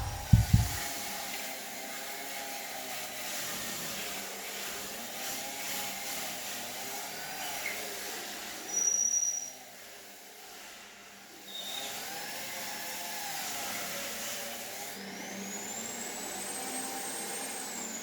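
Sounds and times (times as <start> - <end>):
high whine: 0.0 - 0.8
lathe motor whirring: 0.0 - 0.8.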